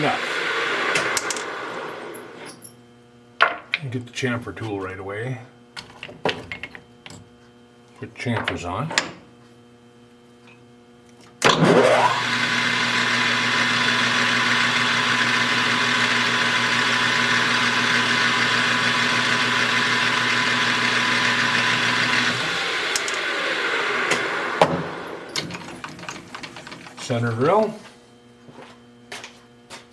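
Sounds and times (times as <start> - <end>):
lathe motor whining: 0.0 - 2.6, 11.4 - 27.9.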